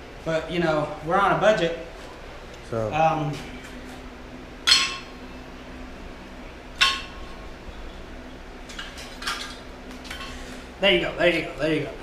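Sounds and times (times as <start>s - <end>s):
metal brake parts clanking: 4.6s - 5.2s.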